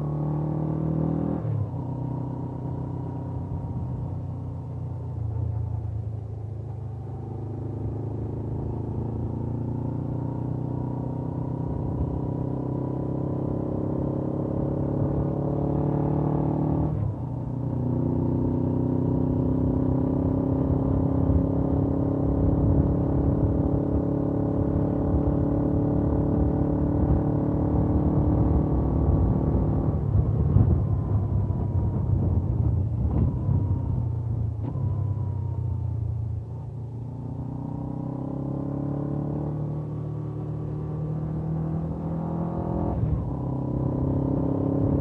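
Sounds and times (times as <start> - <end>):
motorcycle engine accelerating: 0.0 - 45.0.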